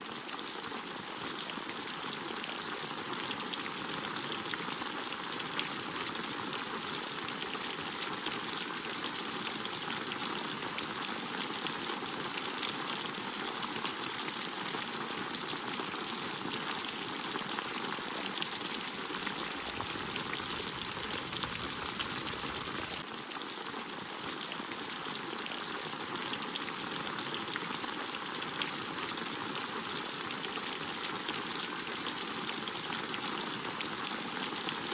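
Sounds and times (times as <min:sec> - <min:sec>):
steady rain: 0:16.8 - 0:23.0.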